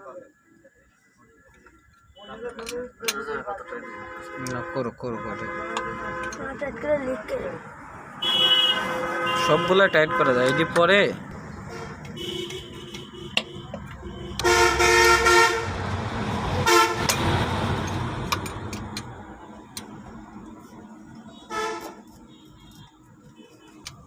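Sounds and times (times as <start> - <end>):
vehicle horn honking: 3.6 - 6.6, 8.2 - 10.9, 11.7 - 15.8, 16.6 - 17.3, 21.3 - 24.0
vehicle passing: 5.6 - 10.4, 14.0 - 20.6.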